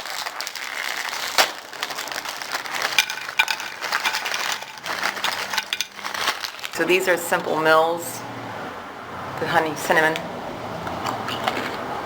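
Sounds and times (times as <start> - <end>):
plastic packaging crinkling: 0.0 - 7.2.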